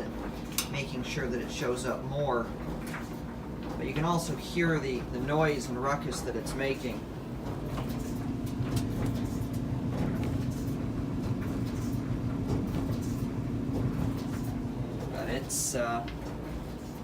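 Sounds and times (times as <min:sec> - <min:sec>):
dryer drum clunking: 0:00.0 - 0:17.0
dryer running hum and rumble: 0:00.0 - 0:17.0.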